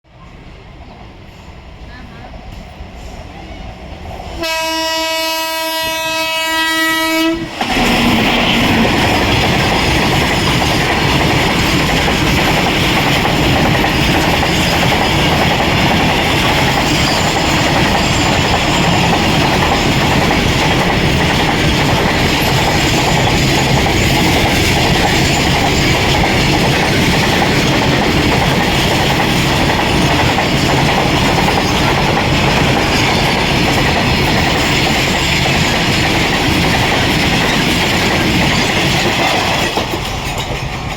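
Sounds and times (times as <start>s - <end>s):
train wheel and rail rush: 0.0s - 40.9s
locomotive horn blast: 4.4s - 8.1s.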